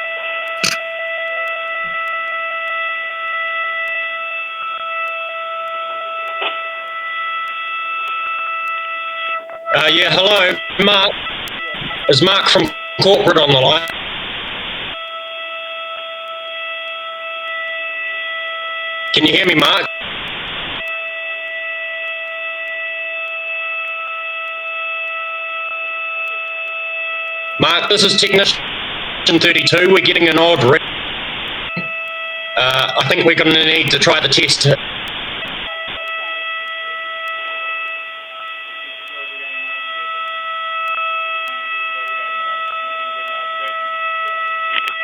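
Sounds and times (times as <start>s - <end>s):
steady telephone tone: 0.0s - 3.0s, 4.1s - 17.6s, 19.1s - 21.1s, 23.4s - 45.0s.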